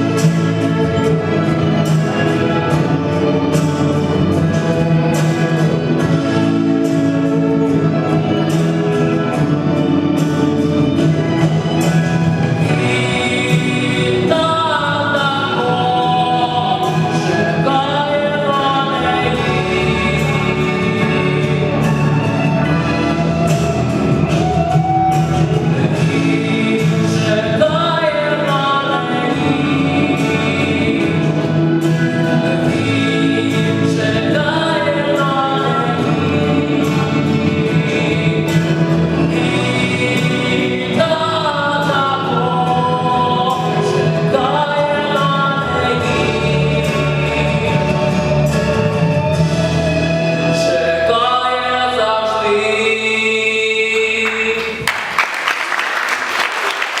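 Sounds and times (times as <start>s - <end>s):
backing music: 0.0s - 57.0s
voices singing together: 11.6s - 54.8s
applause: 54.2s - 57.0s.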